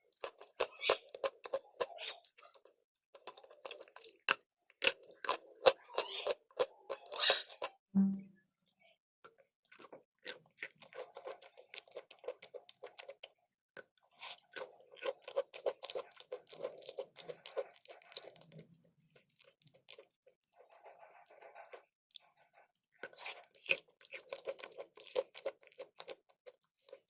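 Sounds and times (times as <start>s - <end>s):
crunchy chewing: 0.0s - 7.8s, 9.3s - 27.0s
short low hum: 8.0s - 8.4s.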